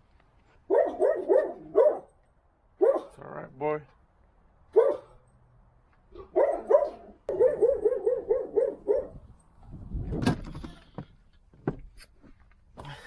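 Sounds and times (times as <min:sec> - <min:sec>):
dog barking: 0:00.7 - 0:02.1, 0:02.8 - 0:03.2, 0:04.7 - 0:05.2, 0:06.2 - 0:09.2.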